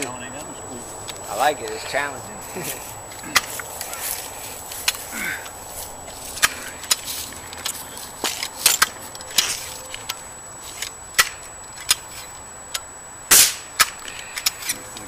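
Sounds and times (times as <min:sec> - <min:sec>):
air rifle shot crack: 0:13.3 - 0:14.0.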